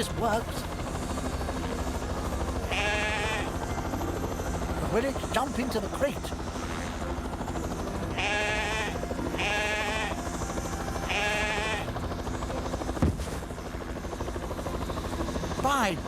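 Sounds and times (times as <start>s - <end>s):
helicopter hovering hum: 0.0s - 16.0s
sheep bleating: 2.7s - 3.5s, 8.1s - 10.2s, 11.0s - 11.9s.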